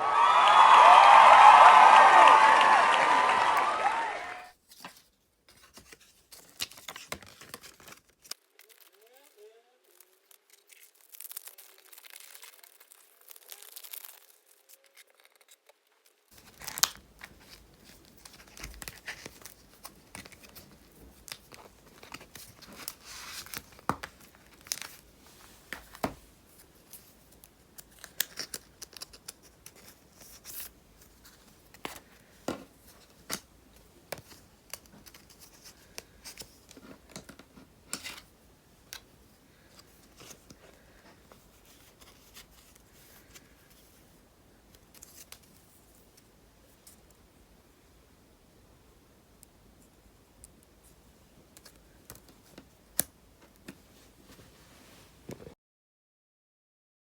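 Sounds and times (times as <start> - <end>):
plastic sleeves crinkling: 4.6 - 47.1
tearing or peeling: 8.3 - 15.6.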